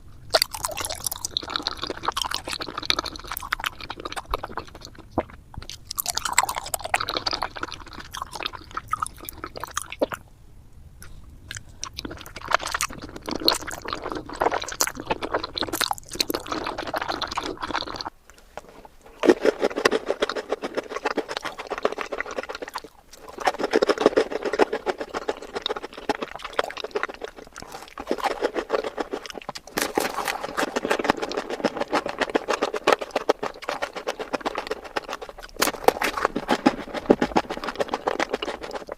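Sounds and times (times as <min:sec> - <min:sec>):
wet sticky chewing: 0:00.3 - 0:10.2, 0:11.0 - 0:38.9.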